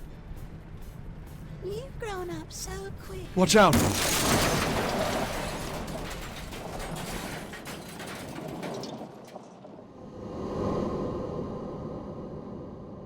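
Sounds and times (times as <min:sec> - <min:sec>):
debris clattering and rattling: 0:03.5 - 0:10.0.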